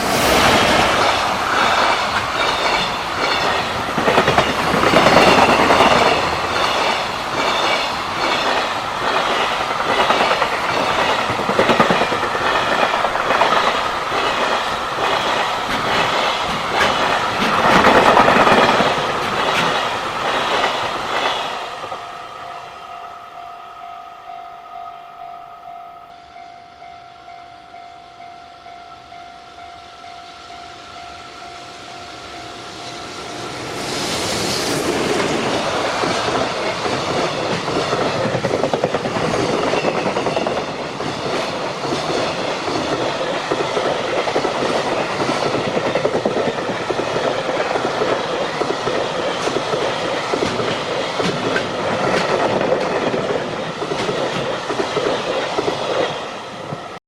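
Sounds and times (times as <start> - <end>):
train wheels clickety-clack: 0.0 - 22.0, 33.3 - 57.0
level crossing warning bell: 21.9 - 33.0.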